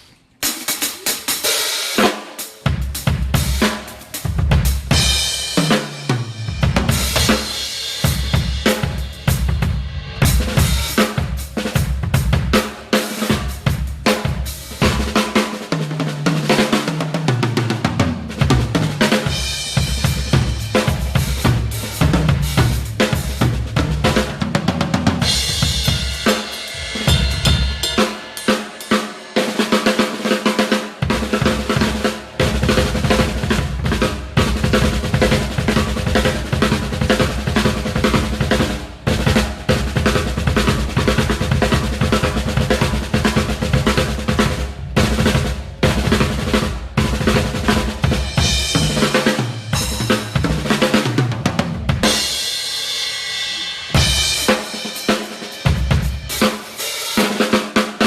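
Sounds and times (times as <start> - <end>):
drum kit played hard: 0.3 - 58.0
cymbal crash: 25.2 - 30.0.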